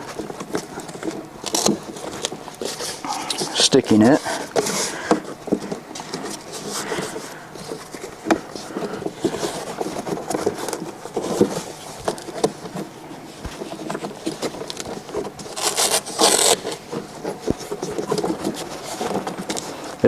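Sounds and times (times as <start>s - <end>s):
fabric cover scraping and rubbing: 0.0s - 20.0s
scratchy velcro rasp: 14.3s - 19.9s.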